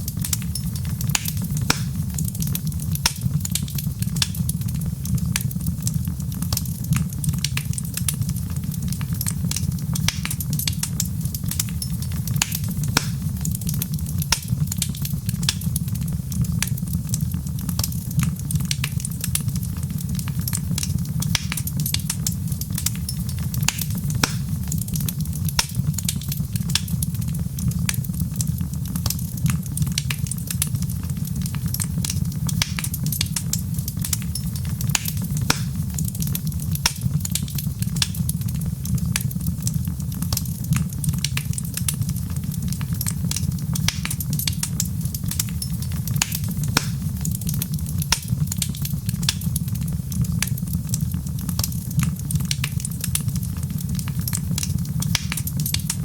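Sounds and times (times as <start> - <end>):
wood fire crackling: 0.0 - 56.0.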